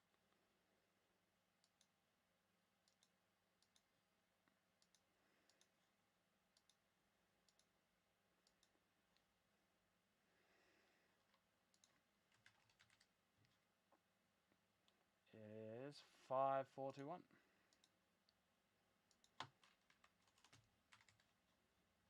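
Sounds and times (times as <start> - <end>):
computer mouse clicking: 1.6 - 2.0, 2.8 - 3.9, 4.8 - 5.8, 6.5 - 6.8, 7.4 - 7.7, 8.4 - 9.3, 11.3 - 13.6, 17.7 - 18.4, 19.1 - 21.3.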